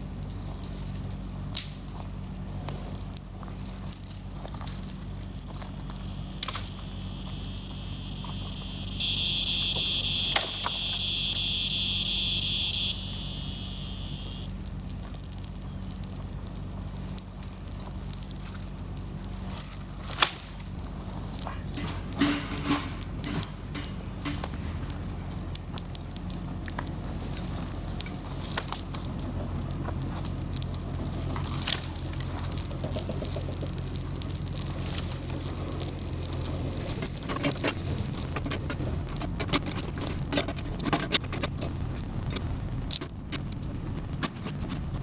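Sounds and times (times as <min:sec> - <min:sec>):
excavator diesel engine running: 0:00.0 - 0:19.8, 0:20.7 - 0:45.0
brush snapping and cracking: 0:00.2 - 0:21.5, 0:23.0 - 0:41.5
loud high buzzing whine: 0:05.5 - 0:14.8.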